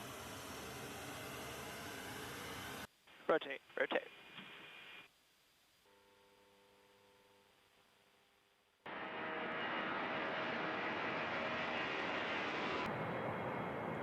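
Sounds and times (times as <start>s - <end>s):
jet engines roaring: 0.0s - 2.9s, 8.9s - 14.0s
faint steady hum: 0.0s - 9.6s.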